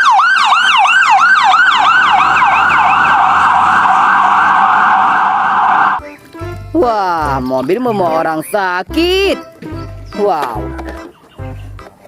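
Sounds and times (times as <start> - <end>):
ambulance siren yelping: 0.0 - 6.0.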